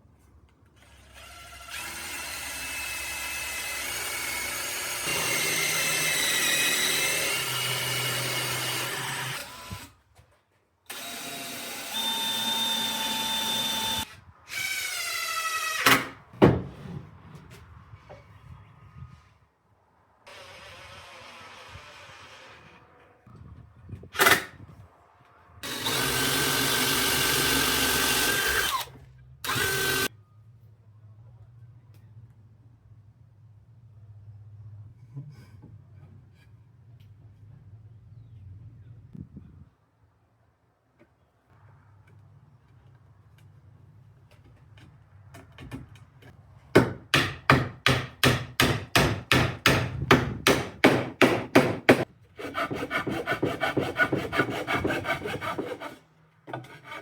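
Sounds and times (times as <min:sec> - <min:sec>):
electric drill running: 0:10.9 - 0:14.1, 0:25.6 - 0:30.1.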